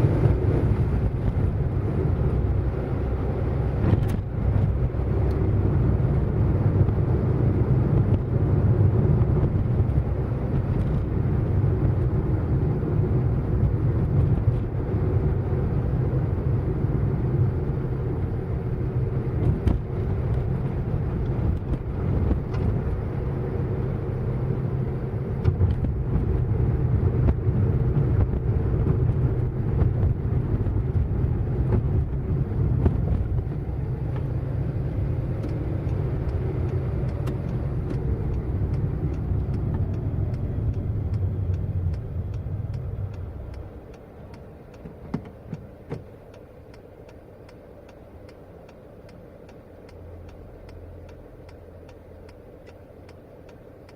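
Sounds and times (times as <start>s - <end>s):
car engine and road rumble: 0.0s - 53.9s
faint regular ticking: 35.2s - 53.9s.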